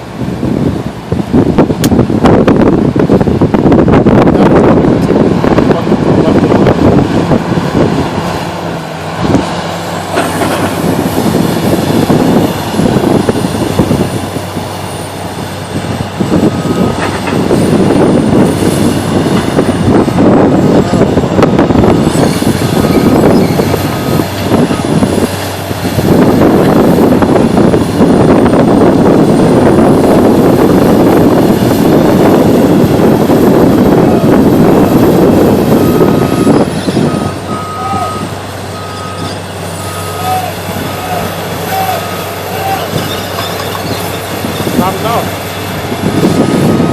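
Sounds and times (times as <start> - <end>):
diesel engine under load: 0.0 - 46.9
high whine: 0.0 - 46.9
reversing alarm beeps: 16.4 - 17.1, 22.8 - 24.8, 35.4 - 42.4, 46.2 - 46.9.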